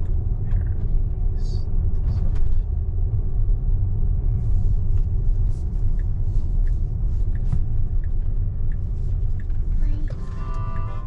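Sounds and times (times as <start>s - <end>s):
road and tyre rumble in car: 0.0s - 11.0s
turn signal ticking: 5.7s - 11.0s.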